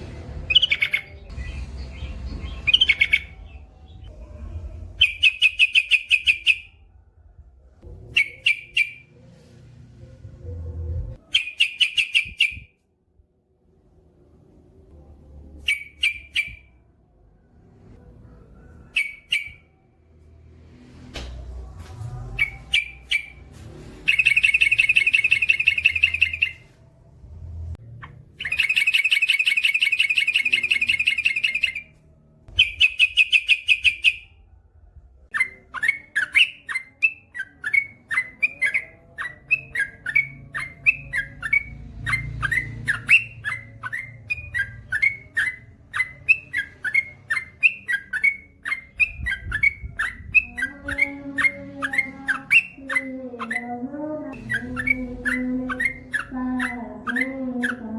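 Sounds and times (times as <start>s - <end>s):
bird trilling: 0.4s - 4.2s, 5.0s - 6.8s, 8.0s - 9.1s, 11.2s - 12.7s, 15.6s - 16.8s, 18.8s - 19.7s, 22.4s - 26.7s, 28.0s - 31.9s, 32.5s - 34.3s, 35.3s - 57.9s.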